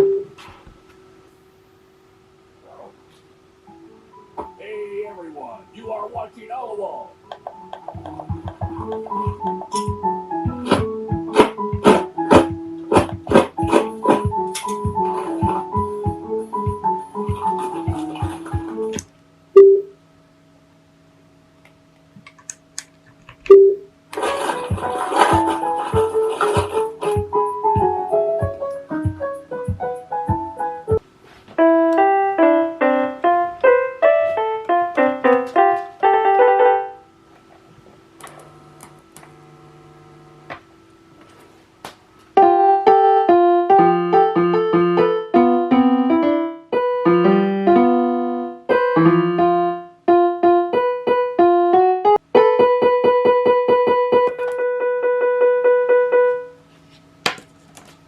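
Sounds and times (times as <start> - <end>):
faint held tone: 0.0 - 0.4, 19.6 - 20.0, 23.5 - 23.9
solo classical piano piece: 7.1 - 19.0, 23.5 - 37.3, 42.2 - 56.8.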